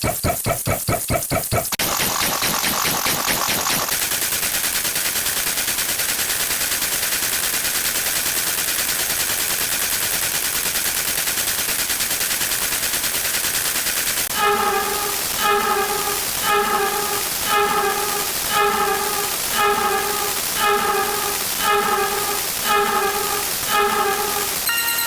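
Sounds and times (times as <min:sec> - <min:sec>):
horn-like chord: 0:14.3 - 0:25.0.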